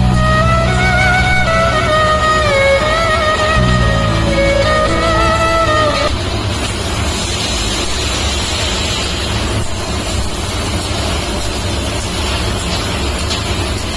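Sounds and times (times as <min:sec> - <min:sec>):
laser cutting machine hissing: 0:06.2 - 0:11.6.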